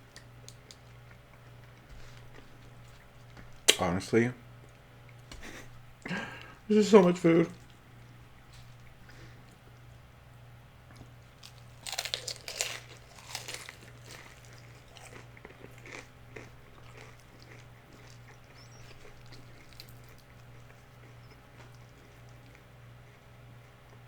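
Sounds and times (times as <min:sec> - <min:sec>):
chewing with soft crunches: 0:00.0 - 0:03.7, 0:04.5 - 0:24.0
biting crispy fried food: 0:10.9 - 0:24.0.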